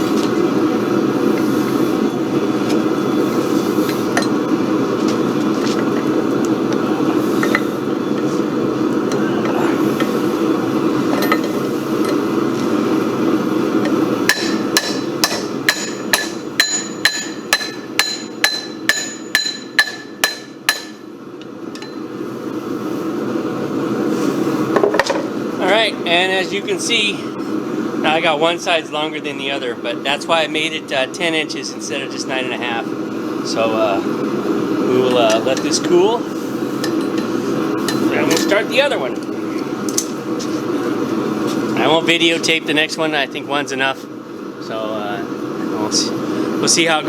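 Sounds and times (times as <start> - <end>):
steady rushing roar: 0.0 - 47.0
hammer striking steel bar: 14.3 - 21.1.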